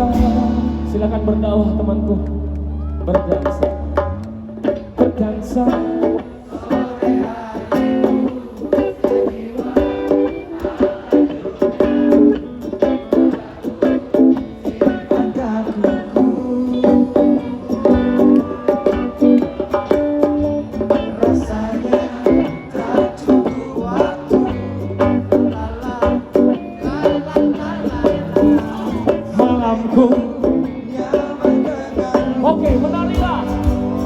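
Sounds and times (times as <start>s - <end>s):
bass line: 0.0s - 6.1s, 16.0s - 34.0s.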